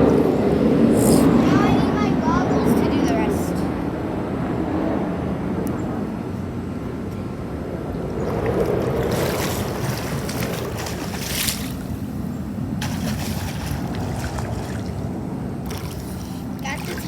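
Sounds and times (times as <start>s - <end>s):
wind rumble on microphone: 0.0s - 17.0s
pool water splashing: 7.8s - 17.0s.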